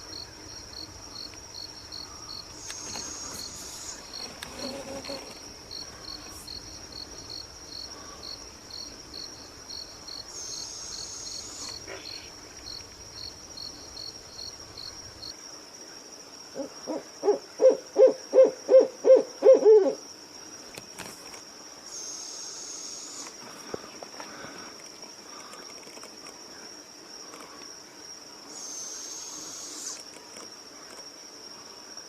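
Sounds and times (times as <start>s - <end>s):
insect high trill: 0.0s - 15.4s, 21.8s - 23.5s, 28.5s - 30.2s
insect pulsed chirp: 0.0s - 32.0s
owl hooting: 16.6s - 20.0s, 28.5s - 30.0s.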